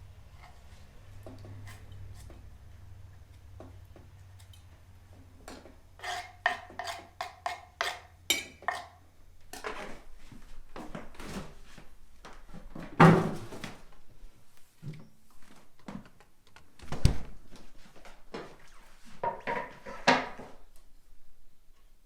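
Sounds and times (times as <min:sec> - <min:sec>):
dishes and utensils clinking: 0:05.5 - 0:09.9.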